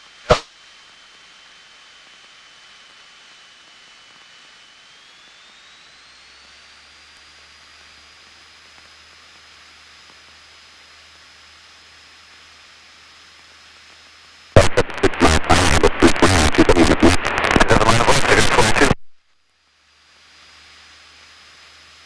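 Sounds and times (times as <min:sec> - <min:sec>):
loud crackling noise burst: 0:14.5 - 0:19.1
faint intercom hiss: 0:14.6 - 0:19.0
thin high whine: 0:14.6 - 0:19.3.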